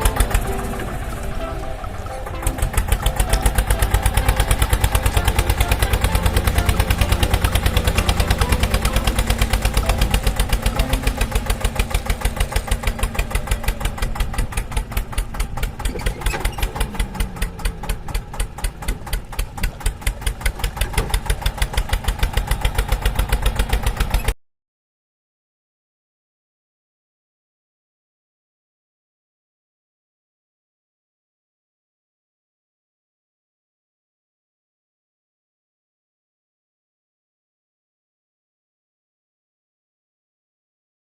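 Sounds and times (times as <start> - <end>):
engine idling with rapid chugging: 0.0 - 24.4.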